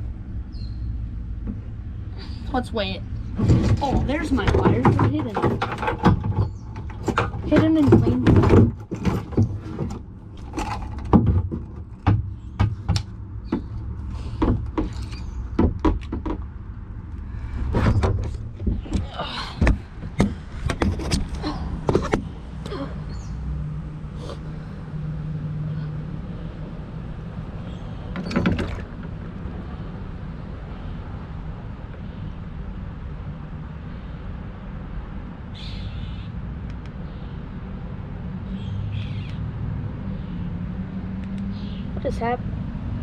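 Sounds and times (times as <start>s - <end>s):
low steady rumble: 0.0s - 43.0s
gear knocking and rattling: 3.2s - 16.6s.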